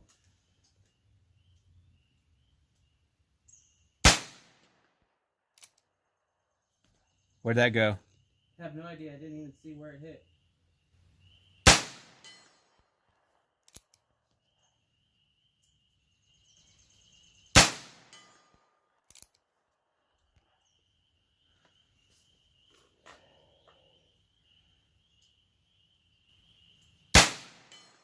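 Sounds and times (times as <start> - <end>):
revolver gunshots with echo: 4.0 - 4.9, 11.6 - 12.7, 17.5 - 18.5, 27.1 - 28.0.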